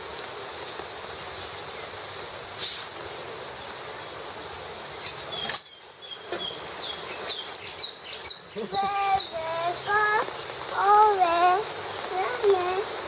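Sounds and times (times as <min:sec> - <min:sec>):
rain hissing: 0:00.0 - 0:13.0
bird chirps: 0:05.0 - 0:10.5.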